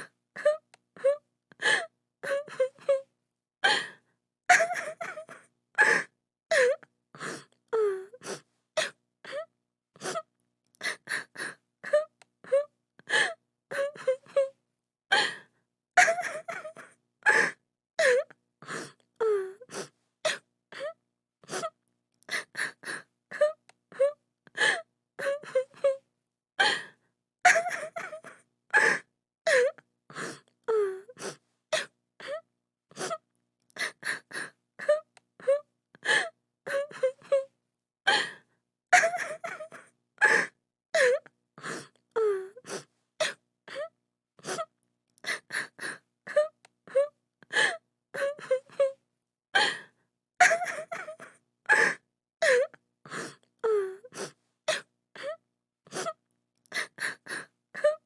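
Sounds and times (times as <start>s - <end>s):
woman sobbing: 4.5s - 6.8s, 16.0s - 18.3s, 27.5s - 29.8s, 39.0s - 41.2s, 45.3s - 49.0s, 50.4s - 52.7s.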